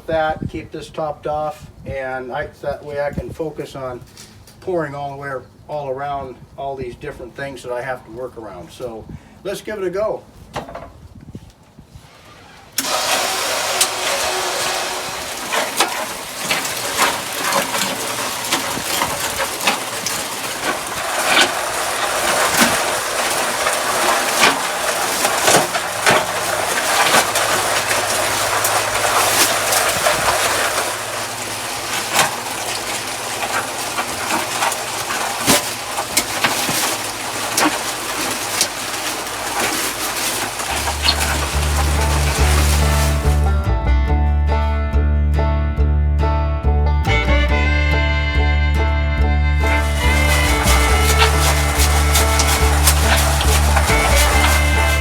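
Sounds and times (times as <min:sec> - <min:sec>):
concrete mixer running: 0:12.7 - 0:55.0
knocks and rattles: 0:13.8 - 0:45.5, 0:47.0 - 0:55.0.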